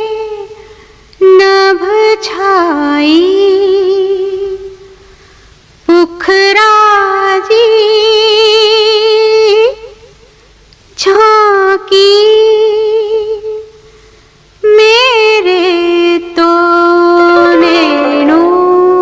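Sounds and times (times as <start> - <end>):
woman singing with vibrato: 14.8 - 19.0.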